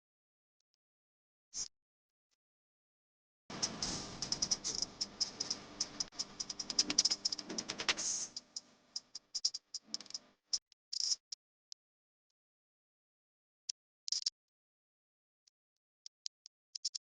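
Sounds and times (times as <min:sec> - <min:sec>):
rapid clicks and taps: 0:03.5 - 0:10.3.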